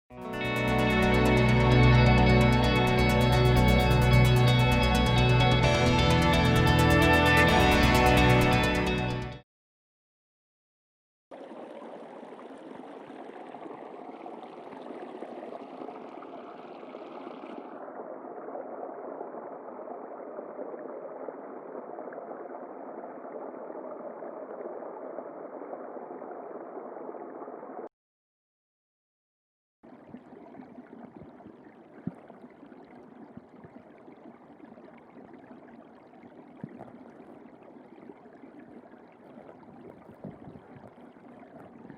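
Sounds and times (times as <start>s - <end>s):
underwater water rush: 11.3s - 27.9s, 29.9s - 41.9s.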